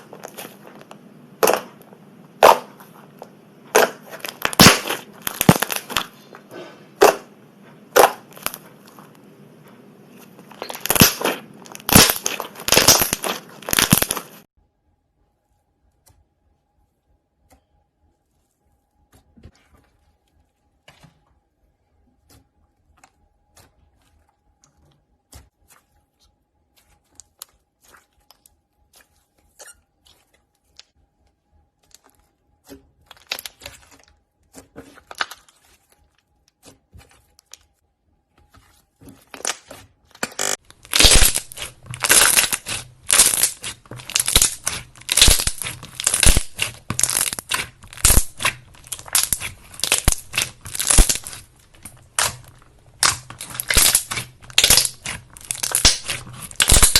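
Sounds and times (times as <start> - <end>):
slime crunching when squeezed: 1.4 - 1.8, 3.7 - 6.3, 7.9 - 9.0, 10.3 - 14.4, 39.2 - 56.9.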